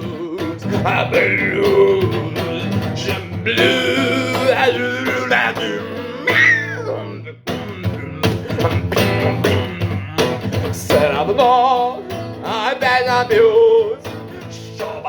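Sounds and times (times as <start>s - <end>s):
blues guitar playing: 0.0s - 15.0s.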